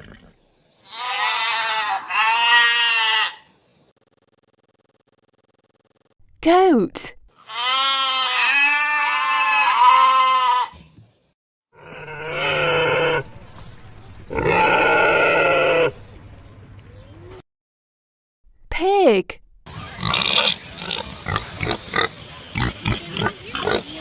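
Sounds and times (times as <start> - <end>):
goat bleating: 0.9 - 3.4, 7.4 - 10.8.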